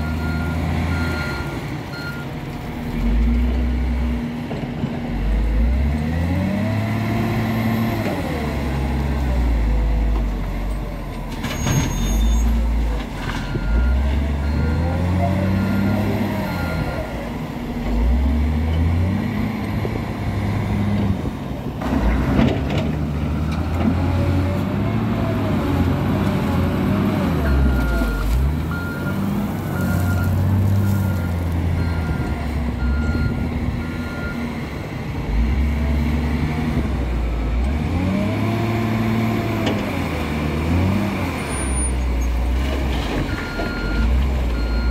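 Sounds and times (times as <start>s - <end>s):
diesel engine revving: 0.0s - 44.9s
reversing alarm beeping: 43.3s - 44.9s.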